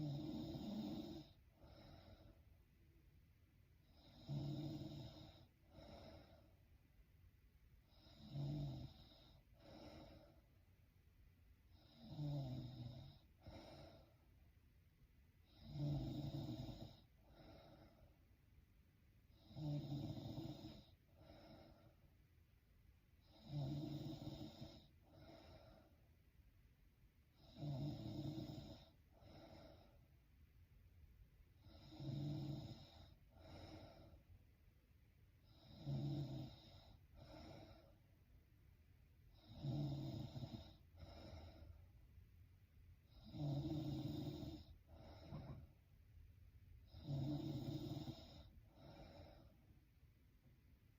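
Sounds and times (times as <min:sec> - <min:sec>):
woman snoring: 0:00.0 - 0:02.4, 0:03.8 - 0:06.5, 0:07.9 - 0:10.4, 0:11.7 - 0:14.1, 0:15.4 - 0:18.1, 0:19.3 - 0:21.9, 0:23.2 - 0:25.9, 0:27.4 - 0:30.0, 0:31.6 - 0:34.2, 0:35.4 - 0:38.0, 0:39.3 - 0:41.8, 0:43.1 - 0:45.7, 0:46.9 - 0:49.5.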